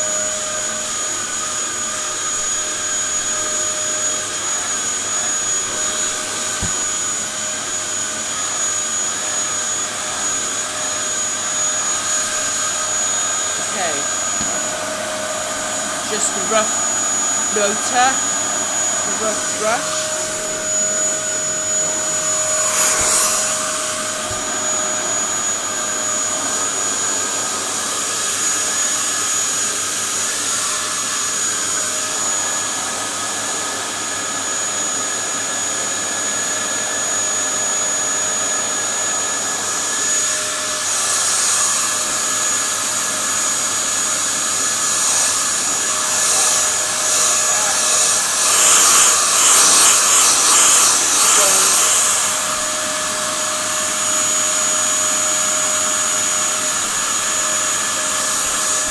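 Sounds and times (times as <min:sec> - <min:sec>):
vacuum cleaner running: 0:00.0 - 0:58.9.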